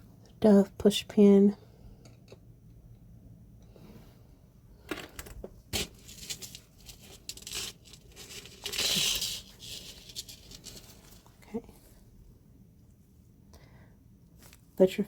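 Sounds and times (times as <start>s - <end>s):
packaging crinkling: 5.8s - 11.4s.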